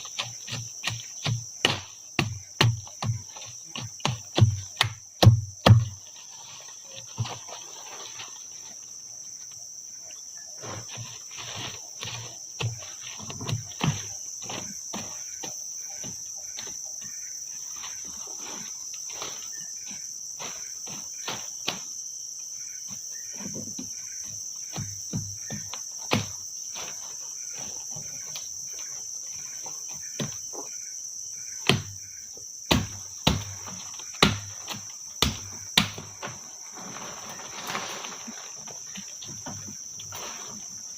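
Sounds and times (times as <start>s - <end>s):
irregular knocks and thumps: 0.0s - 6.1s, 12.0s - 17.2s, 22.9s - 26.4s
insect chorus drone: 0.0s - 40.9s.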